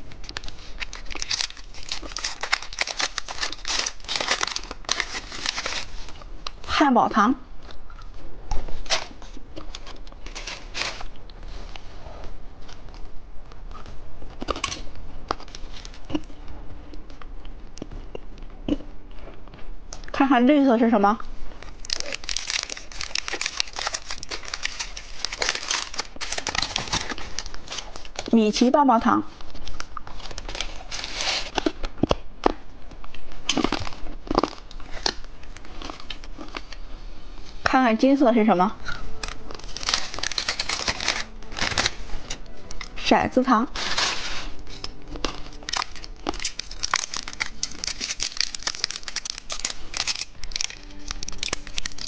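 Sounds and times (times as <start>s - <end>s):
plastic packaging crinkling and clicking: 0.0s - 6.6s, 7.7s - 11.4s, 21.6s - 28.3s, 29.5s - 36.8s, 38.8s - 43.0s, 43.8s - 52.0s.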